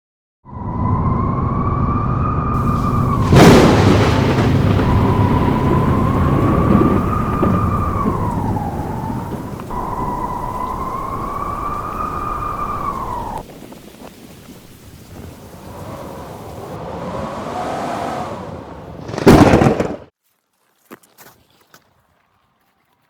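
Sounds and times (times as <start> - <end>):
blizzard wind howling: 0.5 - 20.1
crash-like wind gust: 0.6 - 20.1.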